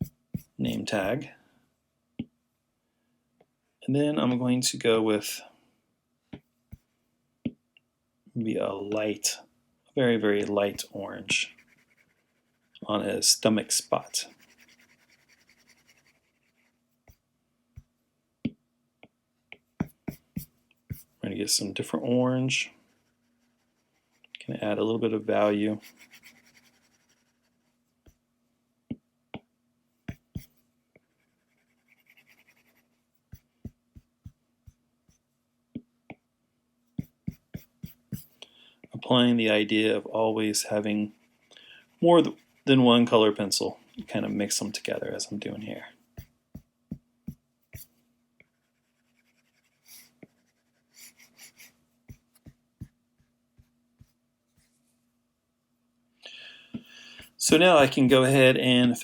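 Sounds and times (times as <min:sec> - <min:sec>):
pencil strokes on paper: 0:00.0 - 0:01.2, 0:10.4 - 0:17.2, 0:19.8 - 0:28.2, 0:30.1 - 0:35.2, 0:37.0 - 0:38.4, 0:39.3 - 0:54.9
pencil ticking against paper: 0:11.5 - 0:12.8, 0:13.8 - 0:17.2, 0:19.8 - 0:21.1, 0:25.4 - 0:27.4, 0:30.1 - 0:35.2, 0:37.0 - 0:38.4.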